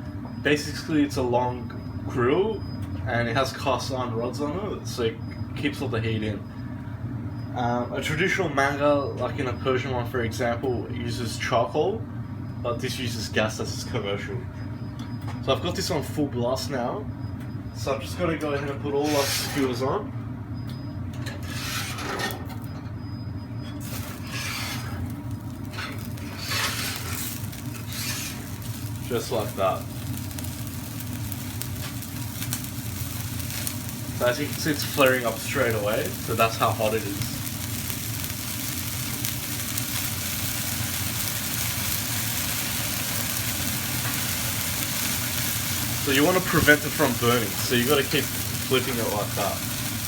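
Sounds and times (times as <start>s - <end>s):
gas burners rushing: 17.8s - 20.0s, 20.8s - 50.0s
metal skewers scraping on grill: 18.9s - 19.8s, 21.3s - 22.4s, 23.8s - 37.7s.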